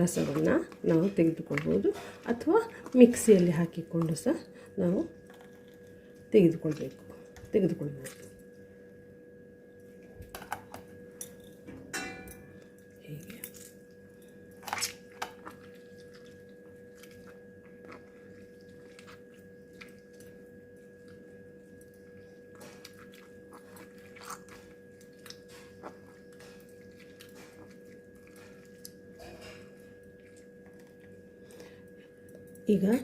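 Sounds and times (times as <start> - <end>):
steady low hum: 0.0 - 33.0
wet squelching of fruit pulp: 14.5 - 31.8.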